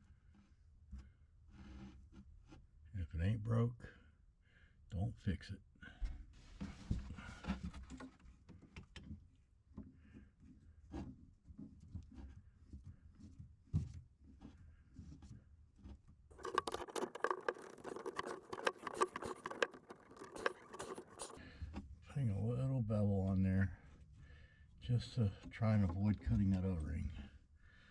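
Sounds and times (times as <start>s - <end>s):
tool scraping plastic pipe: 0.3s - 2.8s, 10.1s - 21.9s.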